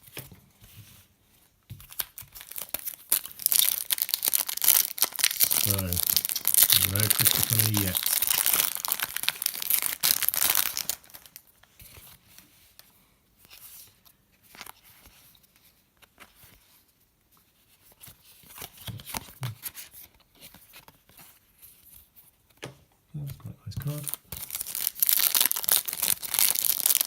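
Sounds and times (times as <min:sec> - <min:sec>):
wrapper tearing and crinkling: 0:01.9 - 0:11.4, 0:23.8 - 0:27.0
cards being handled: 0:05.0 - 0:08.6.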